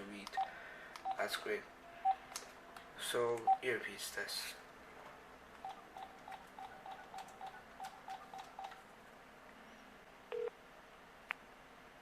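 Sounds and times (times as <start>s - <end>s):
phone keypad beeps: 0.4s - 1.2s, 5.6s - 8.8s, 10.3s - 10.5s.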